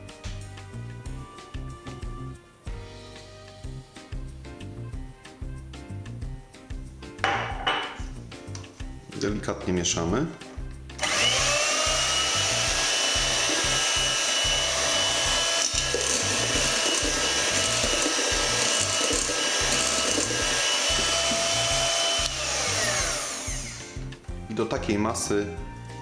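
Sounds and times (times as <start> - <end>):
electric hand mixer whining: 11.0 - 24.2.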